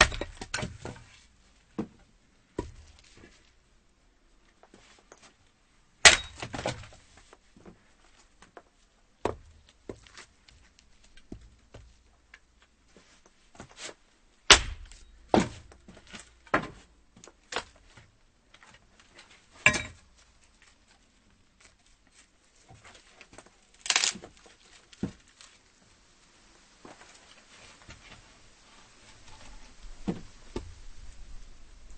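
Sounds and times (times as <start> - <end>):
axe chopping wood: 0.0 - 0.9, 6.0 - 6.9, 14.5 - 15.7.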